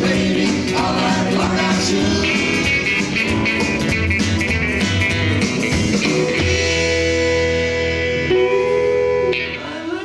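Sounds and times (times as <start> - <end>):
rockabilly band playing live: 0.0 - 9.8.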